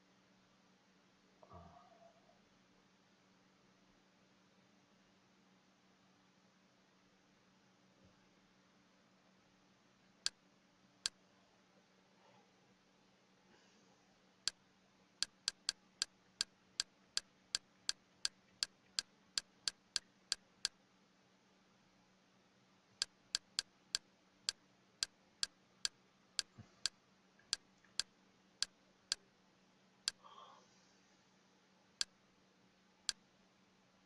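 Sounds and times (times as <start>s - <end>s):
faint low hum: 0.0s - 34.0s
computer mouse clicks: 15.2s - 16.5s, 23.0s - 24.6s.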